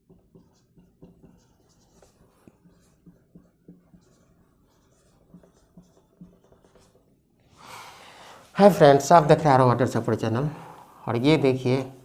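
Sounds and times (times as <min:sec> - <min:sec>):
pen scratching on paper: 0:00.0 - 0:07.2.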